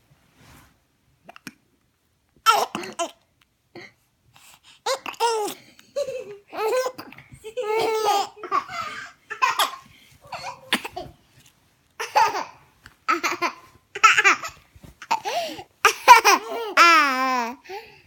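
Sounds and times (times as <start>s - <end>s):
baby laughing: 4.9s - 11.2s, 12.0s - 17.6s.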